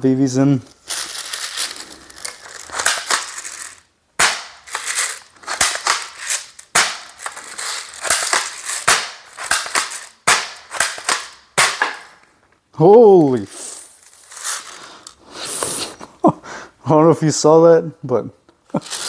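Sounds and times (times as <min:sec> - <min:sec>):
plastic pellets rattling into hopper: 0:00.8 - 0:12.2, 0:12.9 - 0:15.2.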